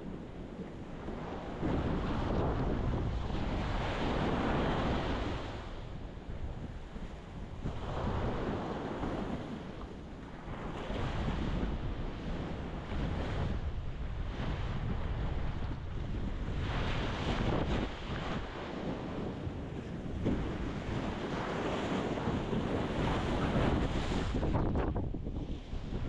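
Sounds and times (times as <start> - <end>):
wind rumbling on microphone: 0.0 - 26.0
waves breaking on rocky shore: 15.8 - 26.0.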